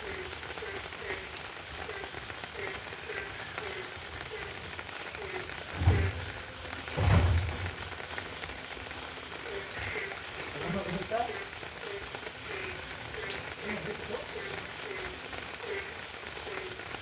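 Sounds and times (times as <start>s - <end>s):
steady rain falling: 0.0s - 17.0s
dull low thumps: 5.7s - 8.0s.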